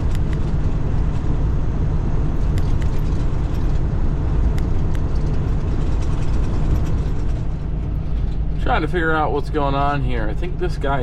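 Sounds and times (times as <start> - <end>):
diesel truck engine drone: 0.0 - 11.0
road noise: 0.0 - 11.0.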